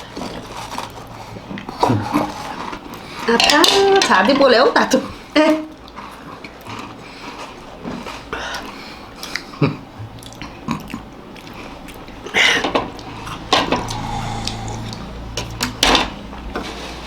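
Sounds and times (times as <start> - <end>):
biting and chewing biscuits: 5.8 - 15.1
sipping hot coffee: 13.0 - 15.6.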